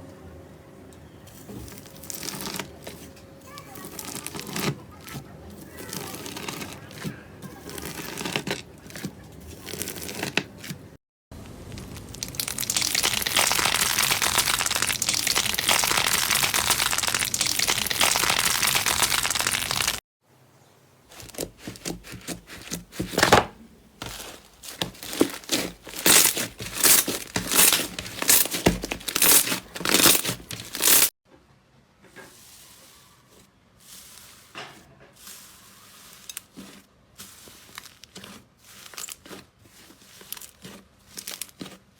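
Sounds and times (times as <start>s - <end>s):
slime crackling and popping: 11.4s - 20.0s, 24.0s - 31.1s.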